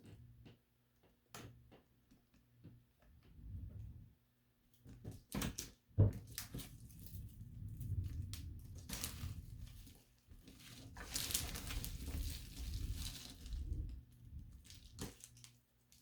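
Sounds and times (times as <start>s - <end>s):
crunching and scratching: 6.3s - 16.0s.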